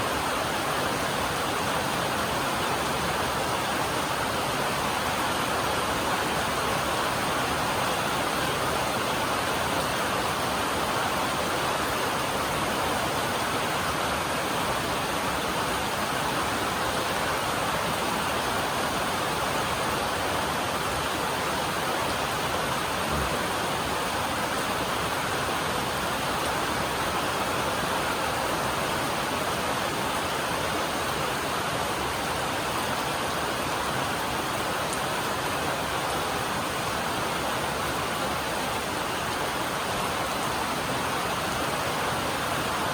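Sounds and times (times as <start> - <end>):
heavy rain on a metal roof: 0.0 - 42.9.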